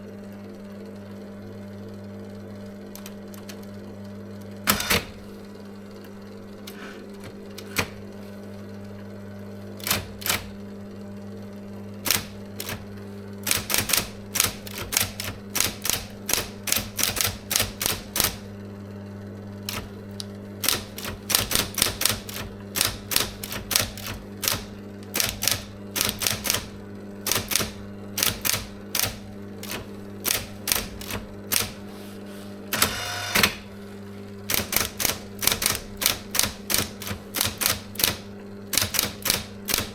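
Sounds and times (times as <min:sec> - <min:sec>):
typewriter motor humming: 0:02.8 - 0:03.8, 0:04.4 - 0:05.4, 0:06.6 - 0:10.7, 0:12.0 - 0:18.6, 0:19.4 - 0:39.9
typewriter key strikes: 0:04.7 - 0:05.2, 0:09.8 - 0:10.5, 0:12.0 - 0:12.8, 0:13.4 - 0:18.4, 0:19.7 - 0:20.0, 0:20.6 - 0:31.8, 0:32.8 - 0:33.6, 0:34.5 - 0:39.9
typewriter rattle: 0:09.8 - 0:10.5, 0:12.0 - 0:12.8, 0:13.4 - 0:18.4, 0:19.7 - 0:31.8, 0:34.5 - 0:39.9.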